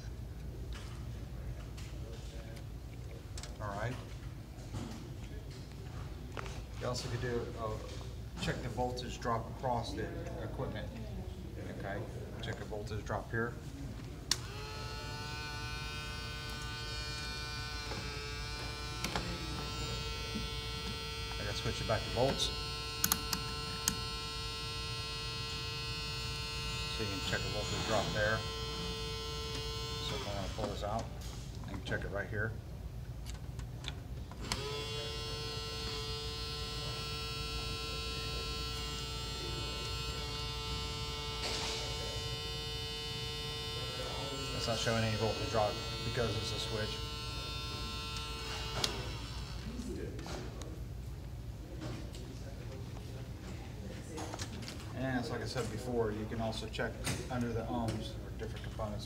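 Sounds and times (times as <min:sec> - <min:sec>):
small electric motor whining: 0:14.4 - 0:30.9, 0:34.4 - 0:50.0.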